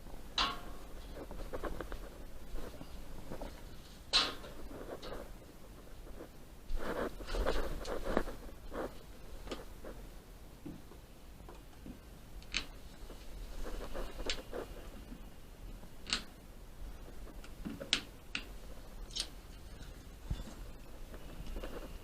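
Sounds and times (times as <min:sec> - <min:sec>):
faint rustling handling noise: 0:00.8 - 0:11.0, 0:12.7 - 0:15.9, 0:18.5 - 0:22.0.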